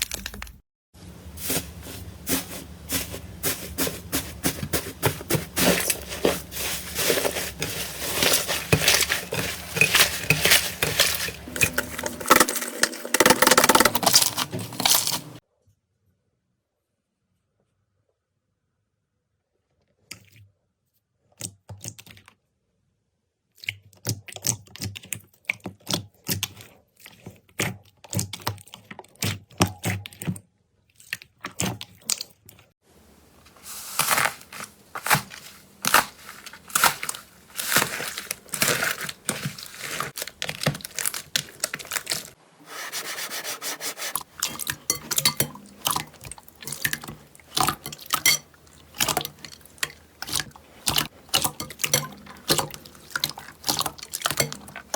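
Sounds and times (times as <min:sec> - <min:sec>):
slime popping and crackling: 0:33.8 - 0:42.4.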